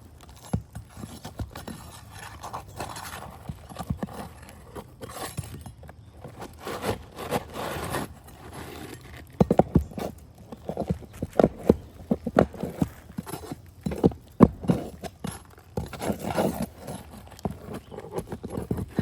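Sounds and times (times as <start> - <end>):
scraping on a shingle roof: 0.0 - 19.0.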